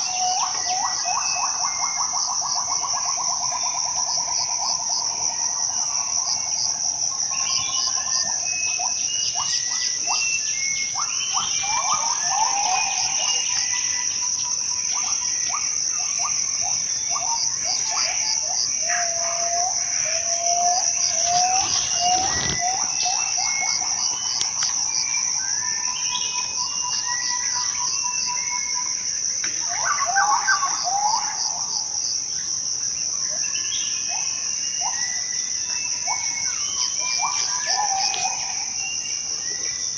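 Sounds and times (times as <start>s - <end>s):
insects droning: 0.0s - 39.9s
bird calls: 7.3s - 28.9s, 33.6s - 39.9s.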